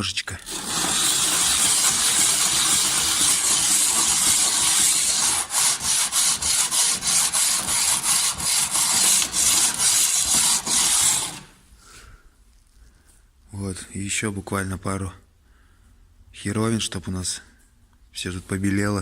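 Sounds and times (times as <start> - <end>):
metal scraping on abrasive paper: 0.0 - 11.6.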